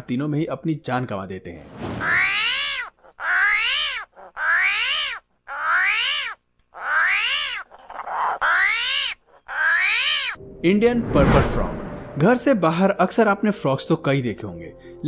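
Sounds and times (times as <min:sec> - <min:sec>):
animal crying: 0:02.0 - 0:10.4.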